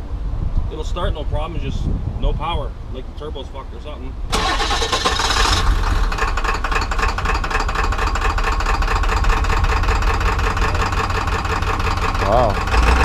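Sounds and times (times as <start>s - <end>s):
man talking: 0.7s - 4.2s, 12.2s - 12.6s
truck engine idling: 4.3s - 13.0s.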